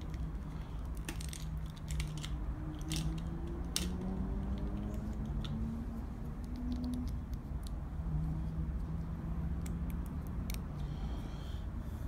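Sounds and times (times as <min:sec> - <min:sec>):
plastic toy parts clicking: 0:00.8 - 0:05.6.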